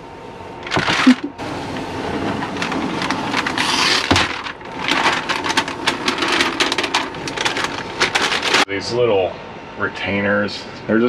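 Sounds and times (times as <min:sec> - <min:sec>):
paper peeling off plastic: 0:02.4 - 0:08.7.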